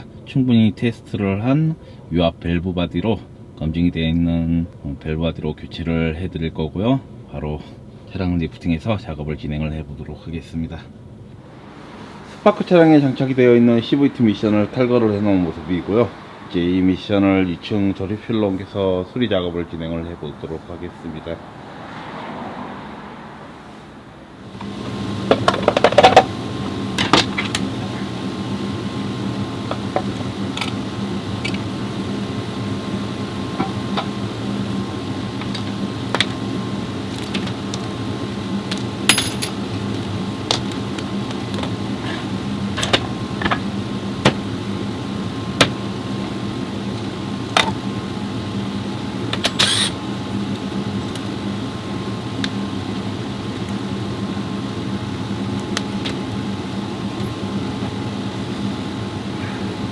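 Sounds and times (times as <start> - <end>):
steady machine hum: 10.9 - 21.4, 24.2 - 59.9
metal tools clinking: 39.1 - 40.1.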